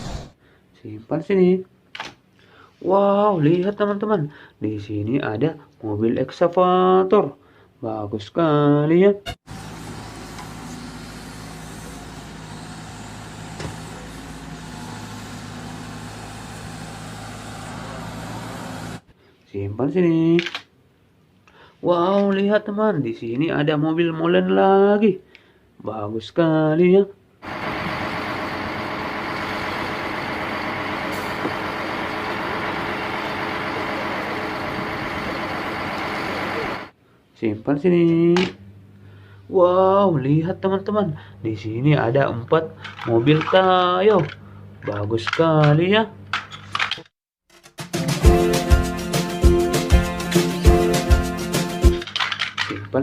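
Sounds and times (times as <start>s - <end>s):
engine droning: 9.5s - 19.0s, 27.4s - 36.9s.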